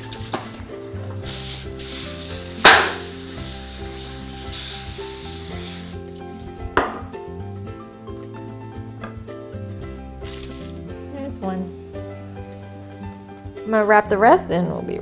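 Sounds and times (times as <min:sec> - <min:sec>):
aerosol spray hissing: 0:00.0 - 0:07.0, 0:10.2 - 0:11.0
background music: 0:00.0 - 0:15.0.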